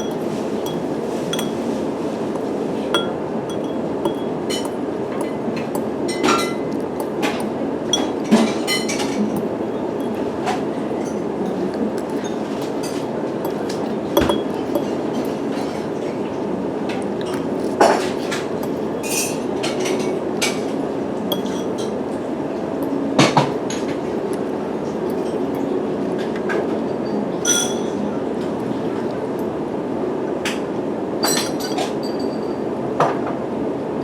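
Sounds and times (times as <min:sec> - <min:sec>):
sharp clinks and knocks: 0:00.0 - 0:15.8, 0:17.2 - 0:22.0, 0:22.8 - 0:25.8
low rumbling background noise: 0:00.0 - 0:34.0.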